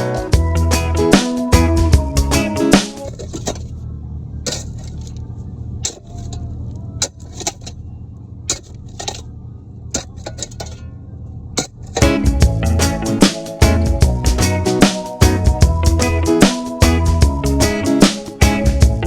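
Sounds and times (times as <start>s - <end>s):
music: 0.0s - 3.1s, 12.0s - 19.0s
excavator diesel engine running: 0.0s - 19.0s
clinks and knocks while digging: 2.8s - 3.8s, 4.4s - 7.9s, 8.5s - 11.0s, 11.6s - 12.3s.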